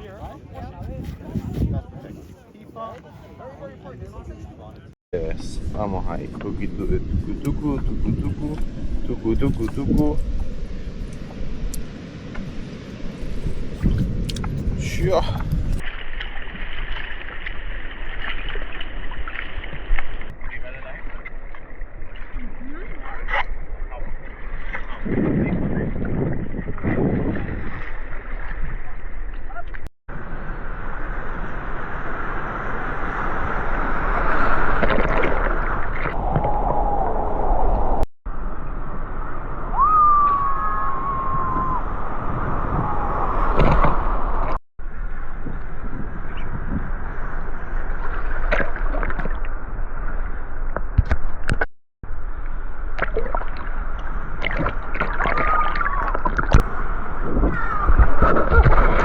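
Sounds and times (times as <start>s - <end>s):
wind buffeting microphone: 0.0s - 16.7s, 22.0s - 29.3s, 30.2s - 51.6s, 53.1s - 59.0s
sea water sloshing and splashing: 15.0s - 29.8s, 32.6s - 37.0s, 47.7s - 51.6s, 52.4s - 59.0s
ocean surf rushing: 30.2s - 36.1s, 39.0s - 44.6s.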